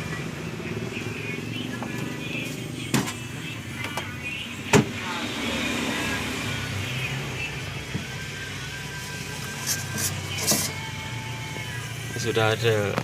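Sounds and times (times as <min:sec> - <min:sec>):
refrigerator compressor humming: 0:00.0 - 0:13.0.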